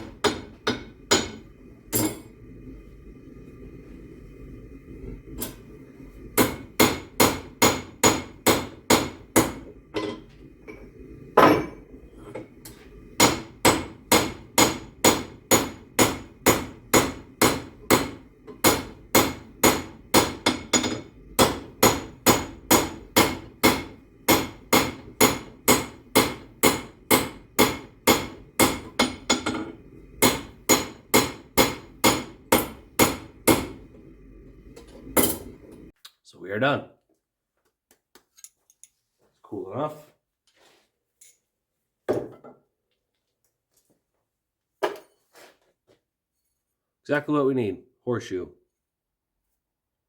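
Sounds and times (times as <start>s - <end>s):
hammer striking hot metal: 0.0s - 2.4s, 6.3s - 10.3s, 11.4s - 12.0s, 12.6s - 35.9s.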